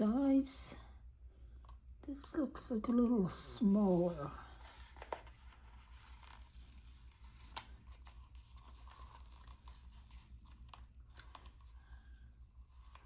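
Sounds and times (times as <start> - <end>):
paper rustling: 4.5 - 13.0.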